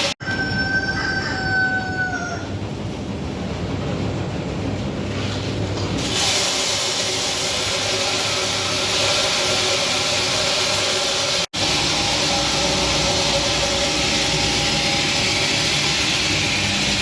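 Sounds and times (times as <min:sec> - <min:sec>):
faint machine hum: 0:00.0 - 0:17.0
seed dryer hissing: 0:05.1 - 0:17.0.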